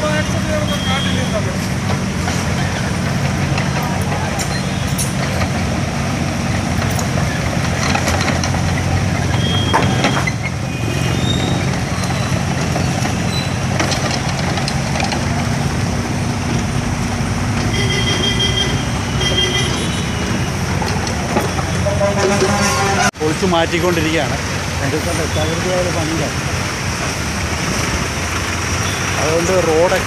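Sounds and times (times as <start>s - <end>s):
diesel machinery droning: 0.0s - 30.0s
knocks and clanks: 1.7s - 23.2s.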